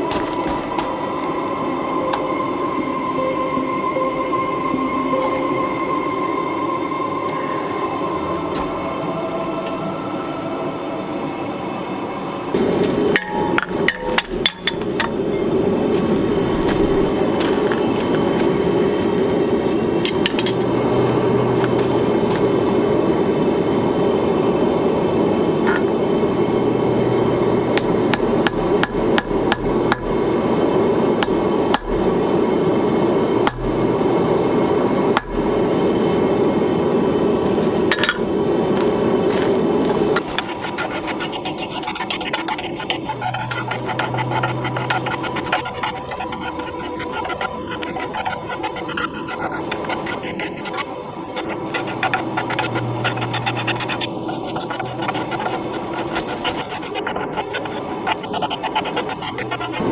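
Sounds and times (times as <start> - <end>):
hammering on hot steel: 12.9 - 15.5, 26.8 - 36.5.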